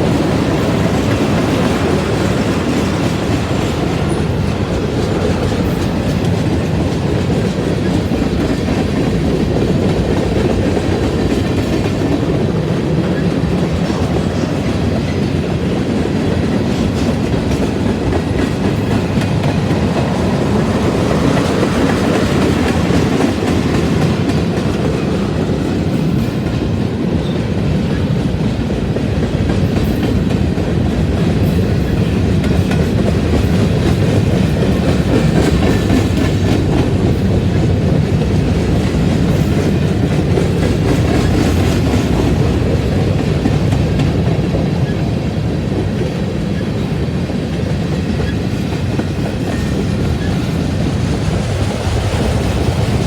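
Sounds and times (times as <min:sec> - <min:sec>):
train wheels rumbling on rails: 0:00.0 - 0:53.0.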